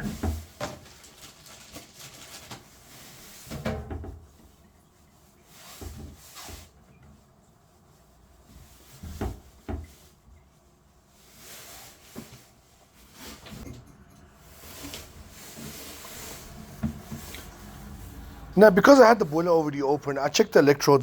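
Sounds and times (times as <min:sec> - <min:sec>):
rubbing and scraping: 0:14.4 - 0:20.0.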